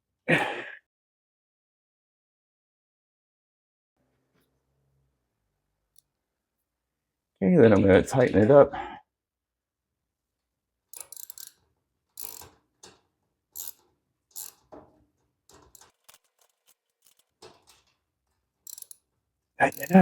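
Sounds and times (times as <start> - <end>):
ratchet wrench clicking: 10.9 - 11.6, 12.2 - 13.0, 13.6 - 14.7, 15.5 - 17.6, 18.6 - 19.0, 19.6 - 20.0.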